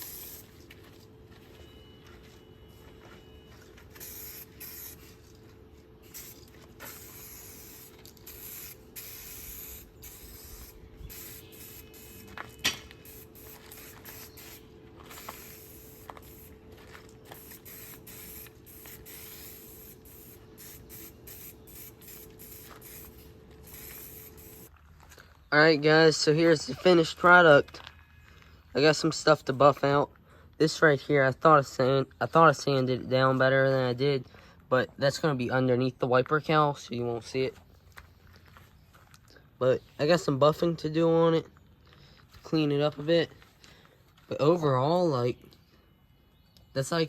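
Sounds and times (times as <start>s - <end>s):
aerosol spray can hissing: 0.0s - 0.5s, 4.0s - 5.2s, 6.0s - 16.6s, 17.3s - 24.7s.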